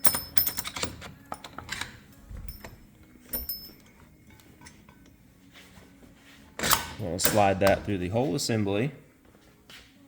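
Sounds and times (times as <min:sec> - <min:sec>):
light metallic clinks: 0:00.0 - 0:01.8, 0:02.4 - 0:05.2.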